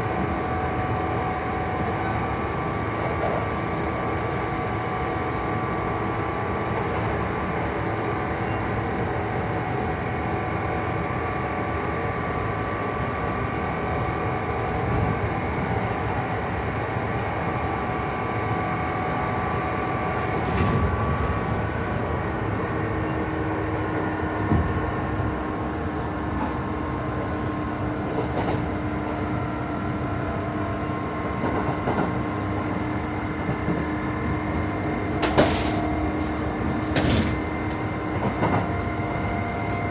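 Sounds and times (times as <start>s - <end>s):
wheel and rail noise: 31.4s - 39.9s.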